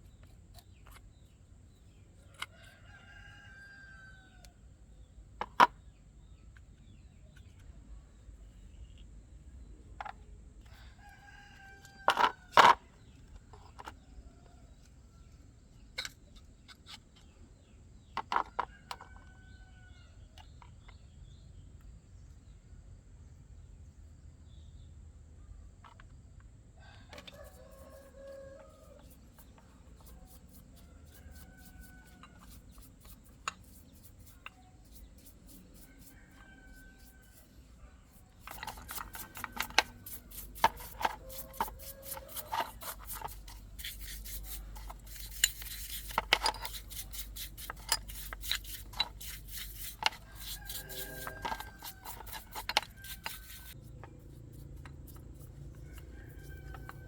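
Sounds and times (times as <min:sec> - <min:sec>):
rooster calling: 0:26.8 - 0:29.1, 0:40.8 - 0:43.0, 0:50.2 - 0:53.7, 0:55.7 - 0:57.0
metal clinks and scrapes: 0:27.1 - 0:57.0.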